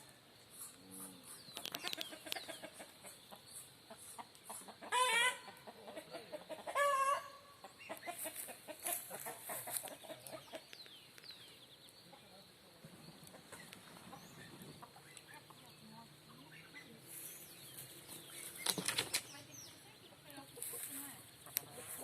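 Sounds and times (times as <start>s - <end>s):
chickens clucking: 0.0s - 11.2s, 12.0s - 22.0s
loud wavering chicken calls: 0.6s - 10.7s.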